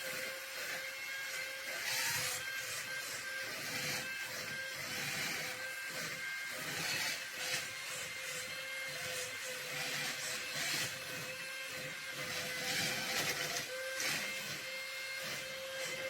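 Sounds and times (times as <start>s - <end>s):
small fan motor whine: 0.0s - 16.0s.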